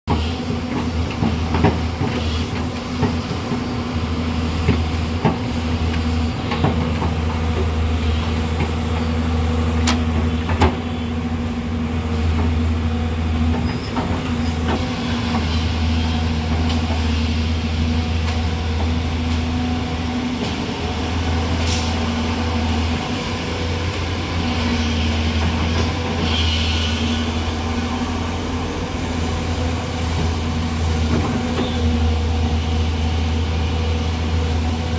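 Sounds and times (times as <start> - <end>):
excavator diesel engine running: 0.1 - 34.9.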